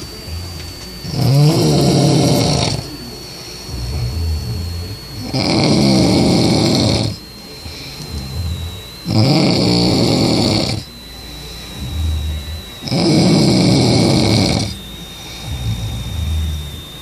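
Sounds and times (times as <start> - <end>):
man snoring: 1.1 - 3.0, 3.7 - 8.3, 9.0 - 11.0, 11.8 - 16.9.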